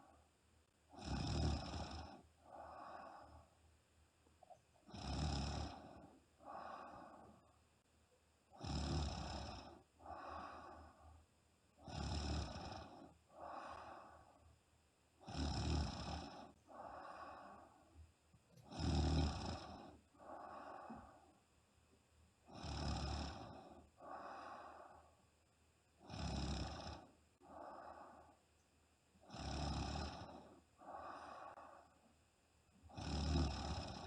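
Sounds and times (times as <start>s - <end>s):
woman snoring: 0.9s - 3.5s, 4.8s - 7.4s, 8.5s - 11.1s, 11.8s - 14.3s, 15.2s - 17.8s, 18.6s - 21.2s, 22.4s - 25.1s, 26.0s - 28.4s, 29.2s - 32.0s, 32.8s - 34.0s.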